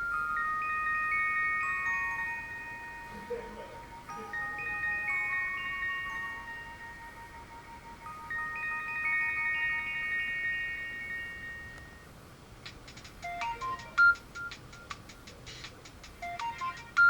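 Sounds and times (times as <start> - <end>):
chime-like phone ringtone: 0.0 - 12.2, 13.3 - 14.9, 16.2 - 17.0
ringtone with quick short notes: 13.2 - 17.0.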